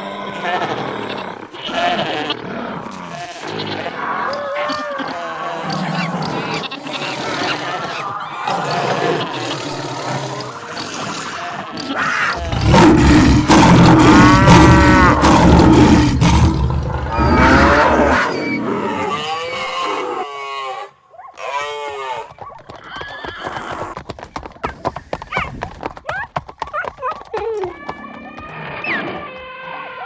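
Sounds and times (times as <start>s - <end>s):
loud animal calls: 3.1s - 23.8s
rumble of pounding hooves: 12.4s - 17.9s, 22.3s - 29.5s
clatter of hoofbeats: 22.3s - 29.9s.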